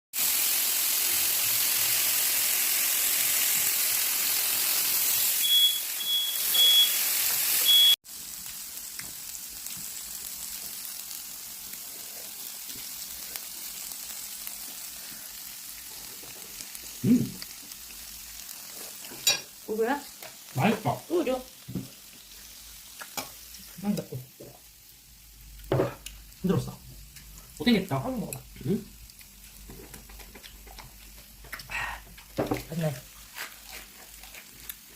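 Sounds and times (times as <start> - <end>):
meat sizzling on grill pan: 0.2 - 34.9
fire alarm short high beeps: 5.2 - 8.0.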